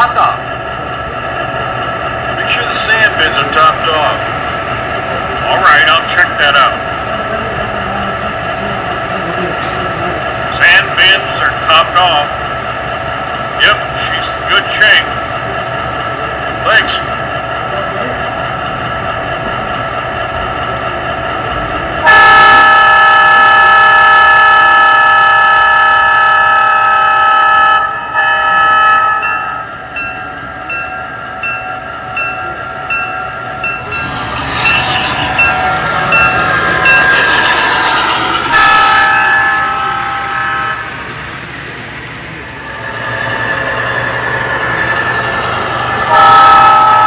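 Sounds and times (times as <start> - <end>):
diesel engine sound: 0.0 - 29.0, 29.6 - 47.0
model train horn blasts: 22.0 - 29.6, 37.2 - 40.8, 46.0 - 47.0
model train bell ringing: 27.8 - 40.9, 42.7 - 47.0.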